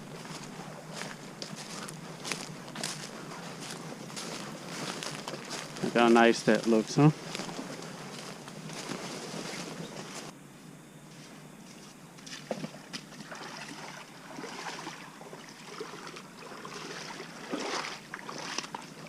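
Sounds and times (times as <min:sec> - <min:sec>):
footsteps wading through water: 0:00.0 - 0:10.3, 0:11.7 - 0:19.0
water sloshing: 0:12.2 - 0:19.0.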